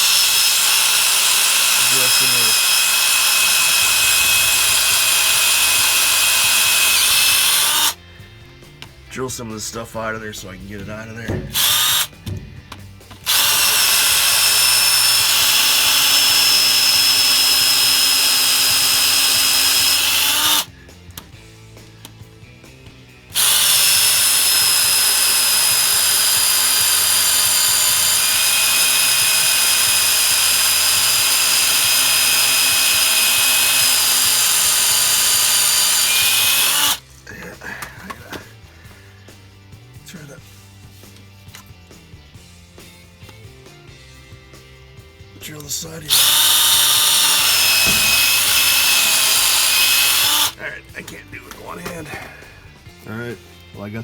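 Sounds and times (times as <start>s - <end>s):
electric drill running: 0.0s - 8.0s, 11.3s - 12.4s, 13.1s - 20.8s, 23.3s - 37.0s, 46.1s - 50.6s.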